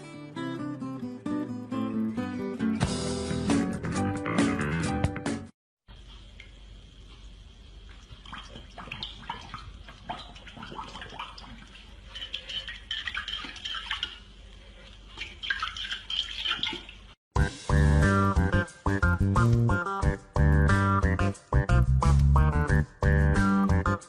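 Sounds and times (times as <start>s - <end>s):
music with bass guitar: 0.0s - 5.5s, 17.4s - 24.0s
water splashing and dripping: 7.8s - 17.2s.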